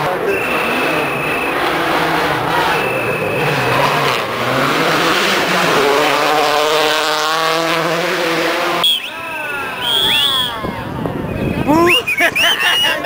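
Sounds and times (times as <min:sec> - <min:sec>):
rally car engine accelerating: 0:00.0 - 0:09.0.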